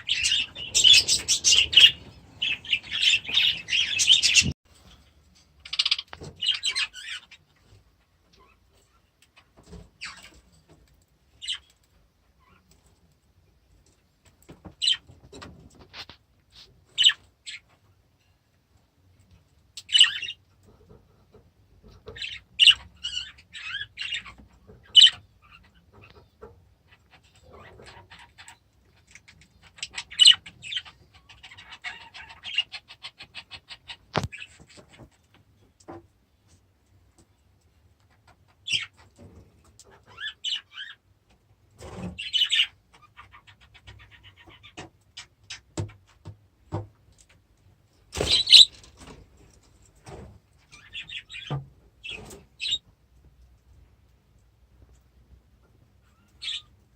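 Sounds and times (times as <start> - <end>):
budgerigars chirping: 0.0 - 4.5, 19.8 - 20.4, 42.2 - 45.3, 48.2 - 48.8, 50.7 - 52.8, 56.1 - 56.7.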